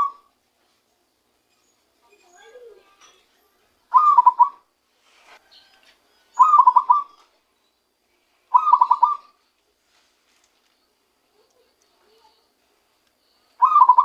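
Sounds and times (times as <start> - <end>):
dove cooing: 0.0 - 0.3, 3.9 - 4.7, 6.4 - 7.2, 8.5 - 9.4, 13.6 - 14.0.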